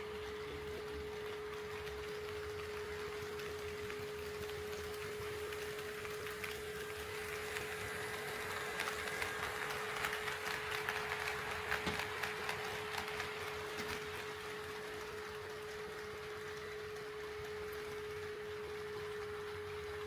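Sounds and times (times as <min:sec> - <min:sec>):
model train wheels clicking: 0:00.0 - 0:20.0.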